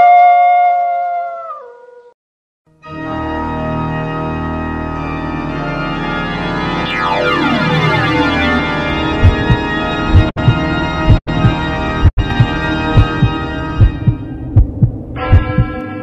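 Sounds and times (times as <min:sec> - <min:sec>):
organ-like chord: 0:02.8 - 0:14.5.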